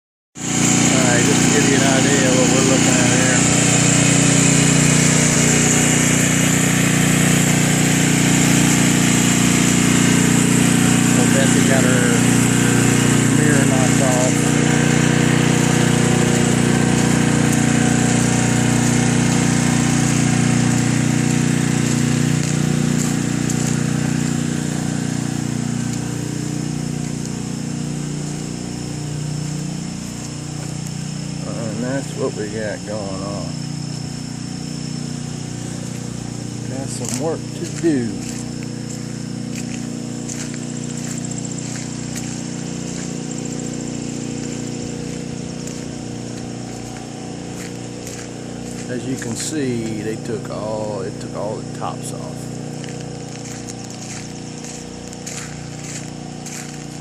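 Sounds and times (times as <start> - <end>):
engine running steadily: 0.4 - 57.0.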